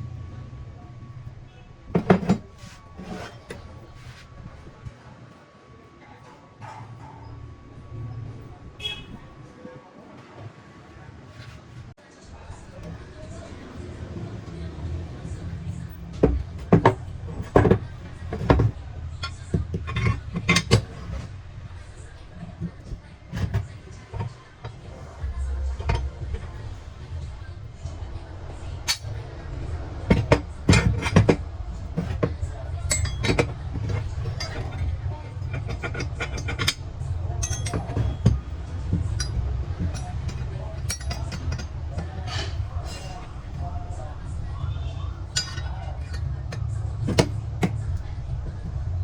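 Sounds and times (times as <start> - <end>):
sharp knocks and clatters: 2.0 - 3.6, 16.2 - 21.3, 30.0 - 43.7, 45.3 - 48.8
low steady hum: 11.8 - 49.0
metal parts clinking: 16.2 - 21.3, 22.0 - 27.4, 28.8 - 29.2, 30.0 - 43.6, 45.2 - 47.8.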